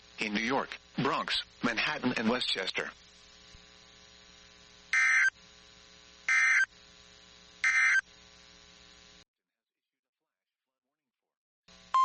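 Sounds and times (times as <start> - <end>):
faint steady hum: 0.0 - 9.3, 11.7 - 12.0
digital data tone bursts: 4.9 - 5.4, 6.3 - 6.7, 7.6 - 8.1.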